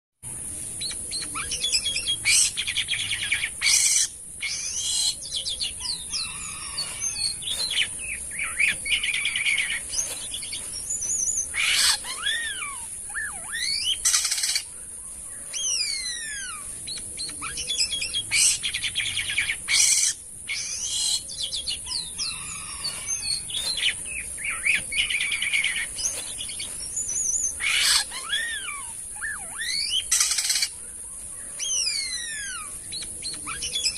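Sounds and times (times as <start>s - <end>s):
high-pitched hiss: 0.3s - 33.9s
starling singing: 1.1s - 14.7s, 15.4s - 30.8s, 31.4s - 33.9s.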